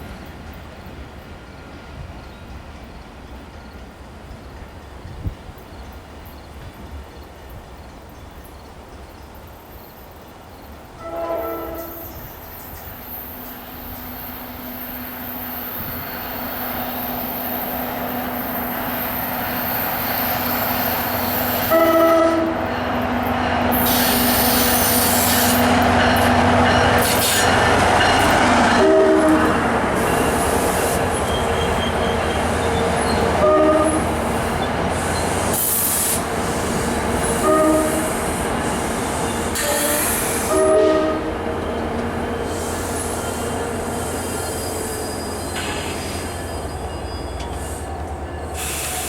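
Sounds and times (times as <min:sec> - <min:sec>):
train wheels on rails: 0:00.0 - 0:49.0
train horn blasts: 0:11.0 - 0:12.4, 0:13.3 - 0:32.3, 0:33.0 - 0:34.5, 0:37.2 - 0:38.5, 0:39.2 - 0:43.4
wheel squeal: 0:44.1 - 0:47.8.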